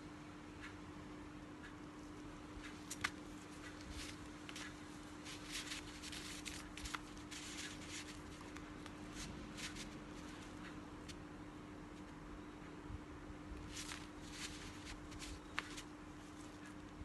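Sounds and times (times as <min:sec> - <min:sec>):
steady low hum: 0:00.0 - 0:17.0
packaging rustling: 0:03.8 - 0:10.5, 0:13.6 - 0:16.6.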